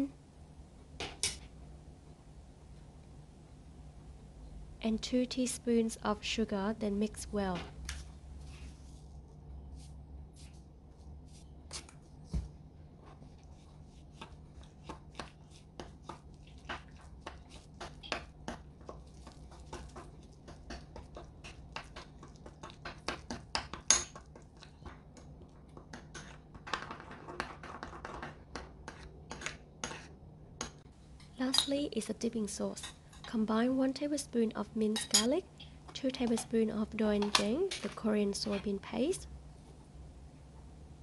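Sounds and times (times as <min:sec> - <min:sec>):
spoon scraping a bowl: 0:28.9 - 0:30.1.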